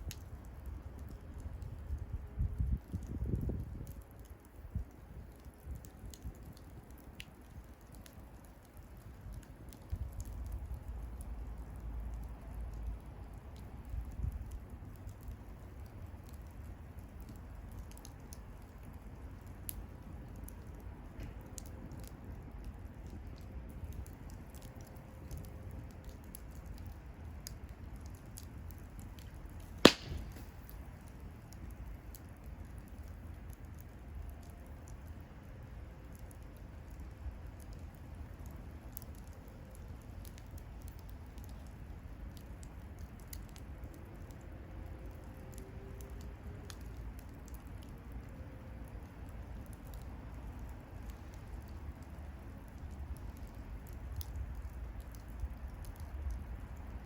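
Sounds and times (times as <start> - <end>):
bonfire burning: 0.0 - 57.0
fire crackles: 0.0 - 57.0
loud sharp pop: 29.8 - 30.8.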